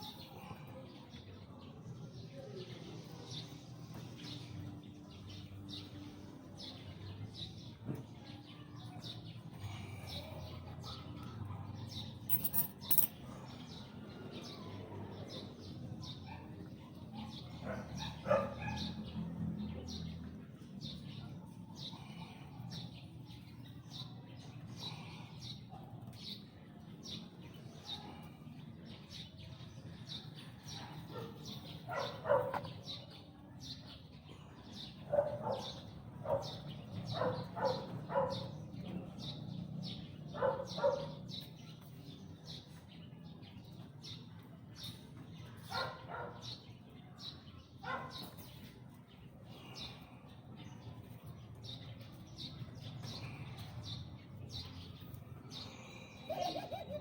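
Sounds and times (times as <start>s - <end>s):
small birds chirping: 0.0s - 57.0s
loud low bird calls: 51.6s - 57.0s.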